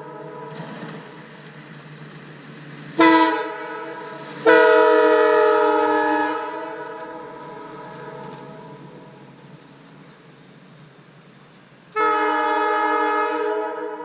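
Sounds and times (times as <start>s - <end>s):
train air horn blasts: 0.0s - 1.2s, 3.0s - 9.3s, 12.0s - 14.0s.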